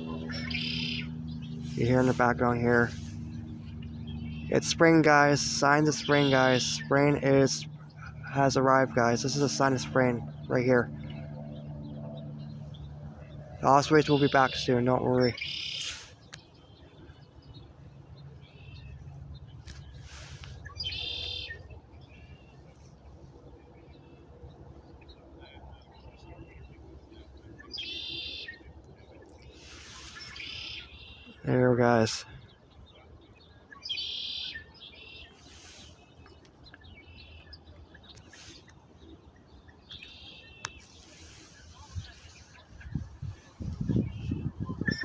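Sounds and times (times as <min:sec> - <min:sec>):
steady low rumble: 0:00.0 - 0:27.8, 0:40.6 - 0:45.0
blackbird song: 0:00.0 - 0:45.0
songbirds chirping: 0:00.0 - 0:45.0.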